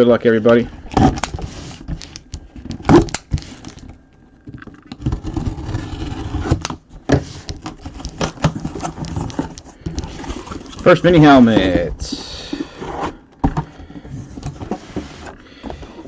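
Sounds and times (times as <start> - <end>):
cardboard and wrapping crinkling: 5.0 - 16.0.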